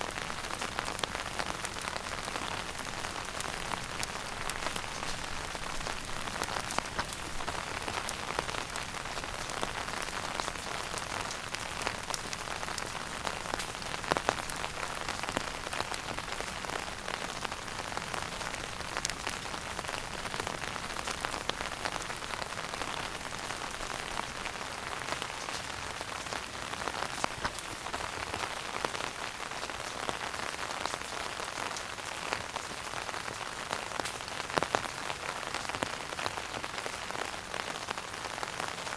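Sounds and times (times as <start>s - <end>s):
fire popping: 0.1s - 16.4s, 26.8s - 29.2s
fire crackling: 0.1s - 37.2s.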